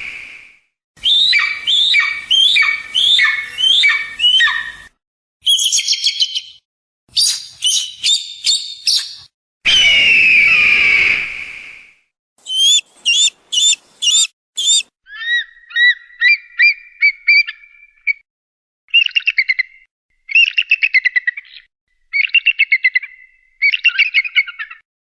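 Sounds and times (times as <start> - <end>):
long harsh eagle scream: 9.7 - 14.8
eagle calls sliding down: 12.4 - 14.9
rapid high chattering eagle notes: 12.4 - 14.9.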